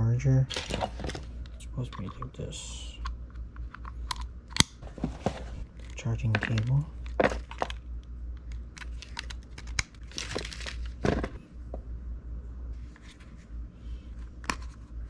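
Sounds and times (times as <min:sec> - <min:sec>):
packaging crinkling: 0:08.4 - 0:11.2.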